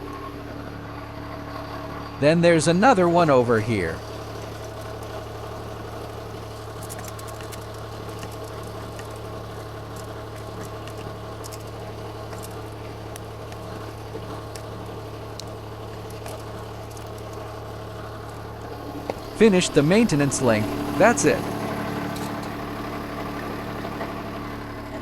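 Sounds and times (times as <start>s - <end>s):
diesel engine idling: 0.0s - 25.0s
light clicks and taps: 4.0s - 22.6s.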